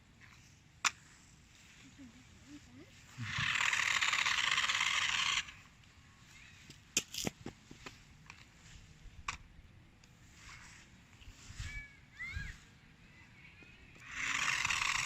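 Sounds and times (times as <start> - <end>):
toy car motor whirring: 3.0 - 7.3, 14.0 - 15.0.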